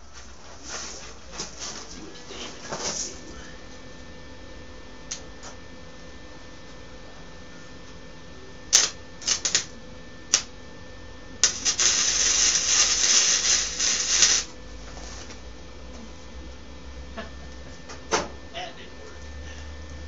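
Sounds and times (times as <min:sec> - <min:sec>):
welding arc crackling: 0:08.7 - 0:10.5, 0:11.4 - 0:14.6.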